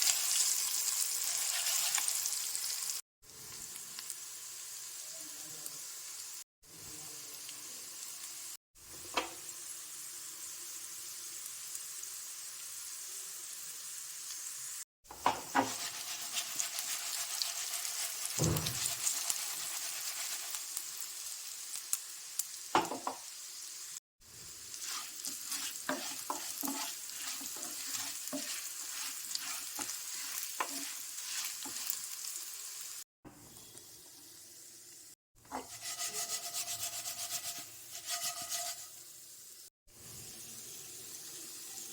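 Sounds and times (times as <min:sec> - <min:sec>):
food sizzling in hot oil: 0:00.0 - 0:41.9
spatula scraping and clicking: 0:24.8 - 0:32.0.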